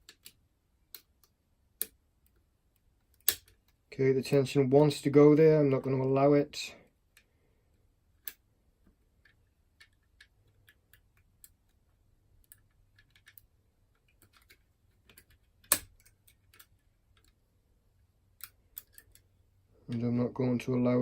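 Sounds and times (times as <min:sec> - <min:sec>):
metallic clicks of lock picking: 0:03.1 - 0:03.7, 0:12.4 - 0:17.4, 0:18.4 - 0:19.3.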